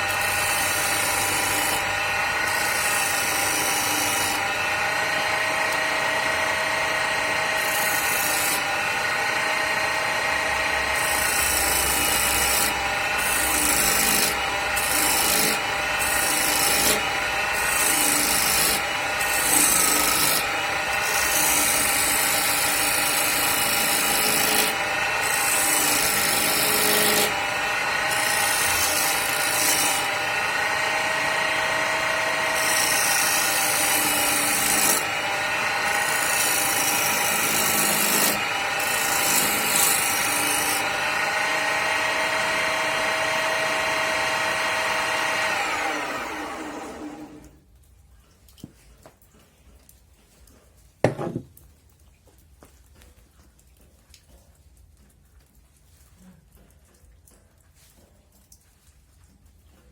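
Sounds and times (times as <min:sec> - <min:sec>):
chisel rasping on spinning wood: 0:00.0 - 0:47.3
lathe motor whine: 0:00.0 - 0:47.6.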